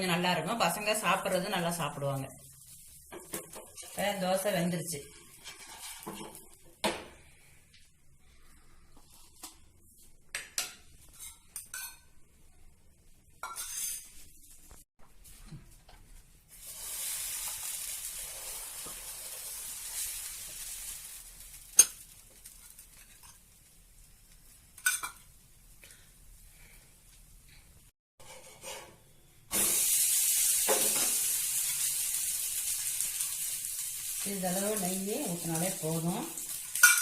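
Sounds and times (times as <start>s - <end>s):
food sizzling on hot griddle: 0.0s - 6.6s, 16.4s - 27.0s, 29.5s - 37.0s
kitchen utensils clinking and scraping: 13.4s - 14.3s, 36.7s - 37.0s.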